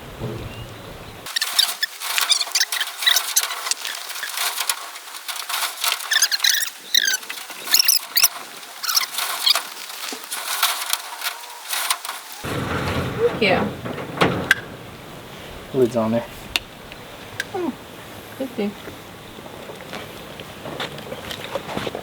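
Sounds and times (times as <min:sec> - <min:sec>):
high chirping squeaks: 0:00.4 - 0:04.5, 0:06.0 - 0:09.7
small animals scratching: 0:01.2 - 0:22.0.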